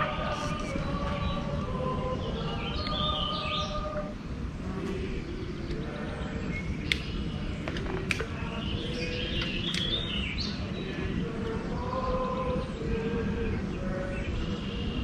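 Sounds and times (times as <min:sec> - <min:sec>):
birds chirping: 0:00.0 - 0:15.0
steady low rumble: 0:00.0 - 0:15.0
sharp clicks: 0:06.8 - 0:08.4, 0:09.3 - 0:10.0.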